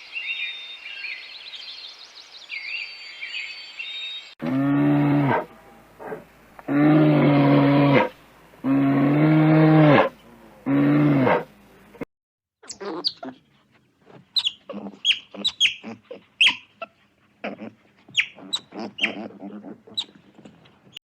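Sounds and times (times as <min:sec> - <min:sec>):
cow mooing: 0:04.4 - 0:11.5.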